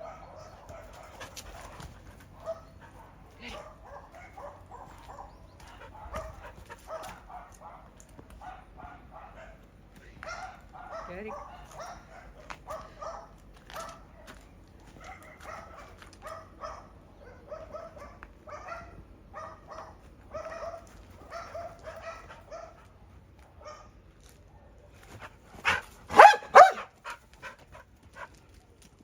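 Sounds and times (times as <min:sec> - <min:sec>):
dog barking: 0:00.0 - 0:01.3, 0:02.4 - 0:09.6, 0:10.2 - 0:14.3, 0:15.0 - 0:22.8, 0:23.6 - 0:23.9, 0:25.6 - 0:26.9.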